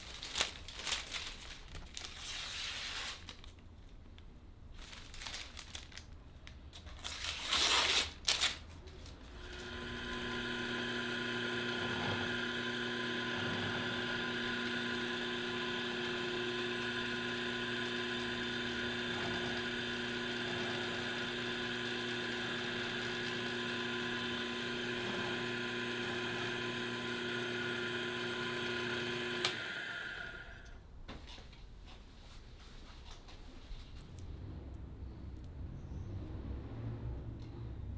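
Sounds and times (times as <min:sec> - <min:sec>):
power tool motor running: 0:09.4 - 0:30.6.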